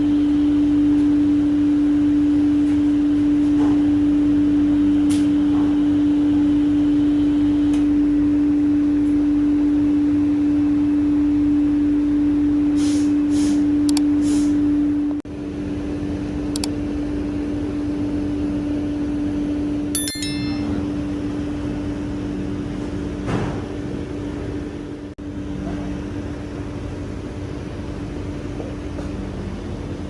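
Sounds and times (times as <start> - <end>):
metallic clink: 20.0 - 20.9.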